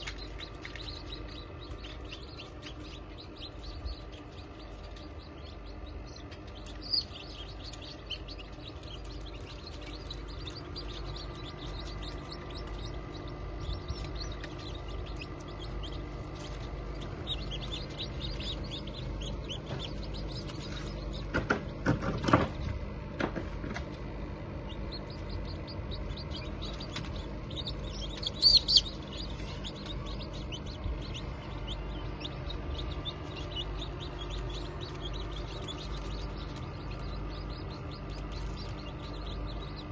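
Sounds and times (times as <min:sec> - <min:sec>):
chicks peeping: 0:00.0 - 0:39.9
machine hum: 0:00.0 - 0:39.9.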